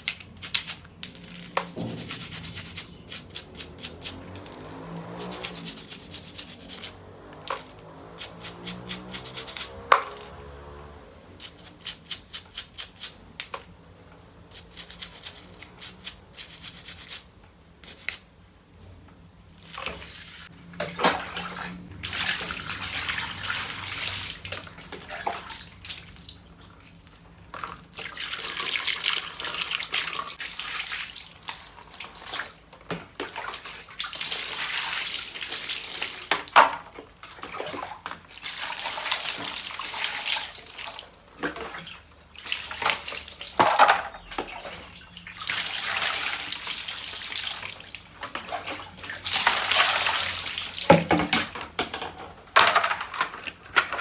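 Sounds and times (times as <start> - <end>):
water running and splashing: 21.0 - 26.4, 37.1 - 51.6.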